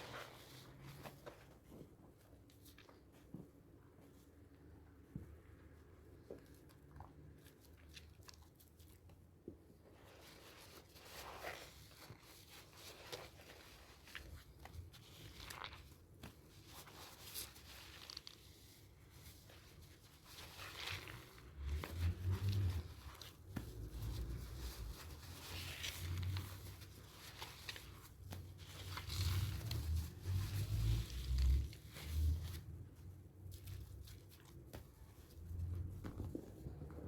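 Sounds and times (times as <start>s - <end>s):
soap lather squishing: 9.9s - 32.2s.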